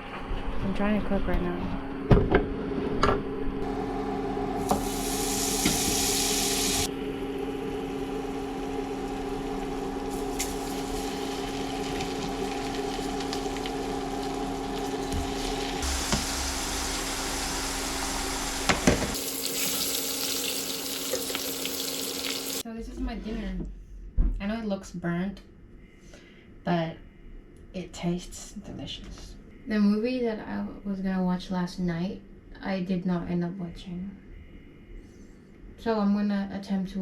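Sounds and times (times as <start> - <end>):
constant hum: 0.0 - 19.2
stove hissing: 3.6 - 22.6.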